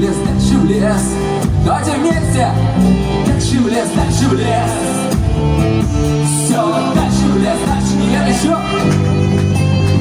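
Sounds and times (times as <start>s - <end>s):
rock band playing live: 0.0s - 10.0s
person singing: 6.2s - 10.0s.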